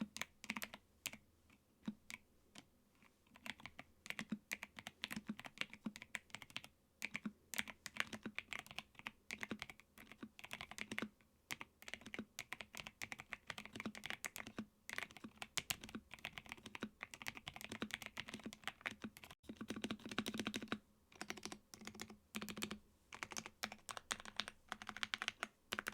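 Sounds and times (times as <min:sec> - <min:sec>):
mechanical keyboard typing: 0:00.1 - 0:01.2, 0:03.3 - 0:25.9.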